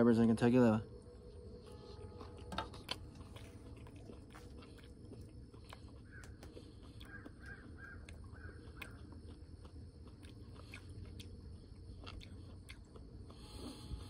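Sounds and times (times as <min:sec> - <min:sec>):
distant crows cawing: 0:06.0 - 0:09.1.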